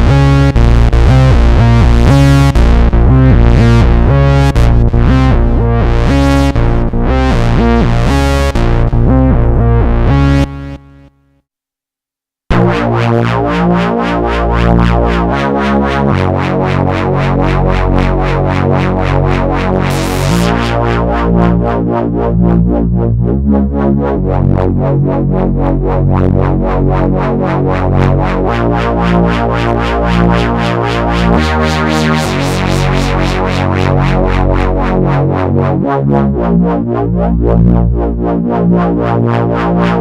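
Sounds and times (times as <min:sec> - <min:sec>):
synthesizer rapidly repeated notes: 0:00.0 - 0:11.0, 0:18.0 - 0:21.7, 0:28.0 - 0:35.2
synthesizer held chords: 0:00.0 - 0:11.2, 0:12.5 - 0:40.0.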